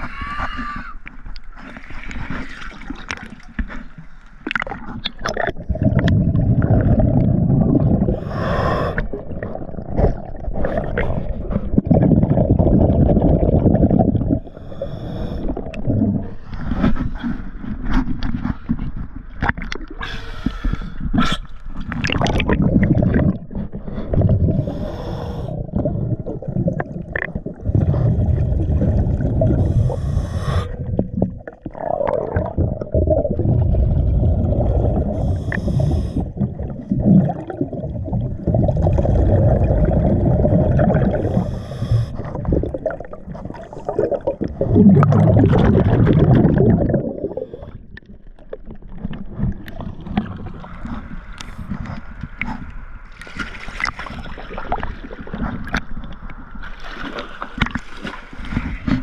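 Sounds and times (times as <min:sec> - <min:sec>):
exhaled air bubbling: 0:00.0 - 0:56.6
regulator hiss on inhale: 0:08.2 - 0:09.1, 0:14.5 - 0:15.6, 0:24.6 - 0:25.6, 0:29.6 - 0:30.8, 0:35.1 - 0:36.4, 0:41.2 - 0:42.3.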